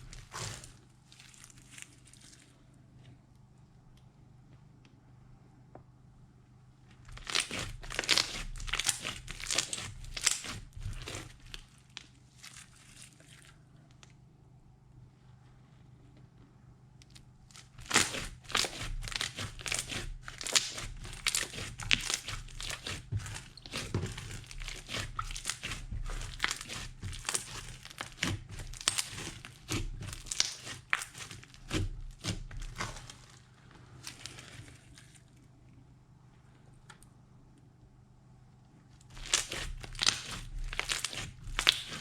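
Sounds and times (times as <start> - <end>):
slime sticky pops and crackles: 17.8 - 33.1, 39.2 - 42.0.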